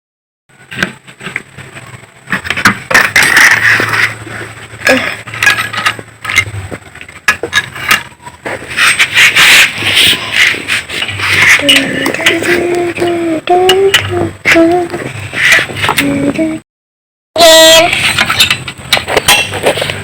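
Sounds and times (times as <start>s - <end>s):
metal tools clinking and scraping: 4.8s - 6.6s, 7.3s - 13.1s, 17.9s - 20.0s.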